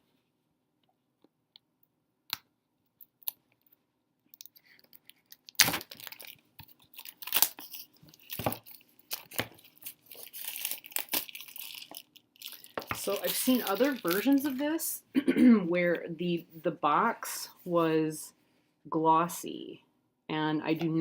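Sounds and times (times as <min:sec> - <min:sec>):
crinkly packaging rustling: 0:04.4 - 0:14.8.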